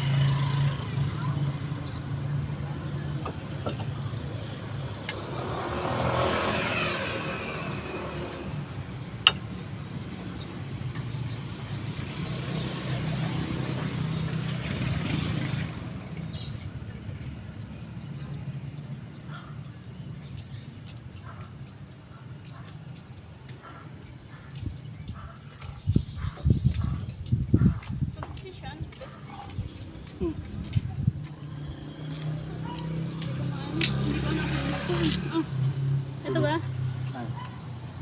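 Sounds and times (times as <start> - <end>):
road traffic hum: 0.0 - 38.0.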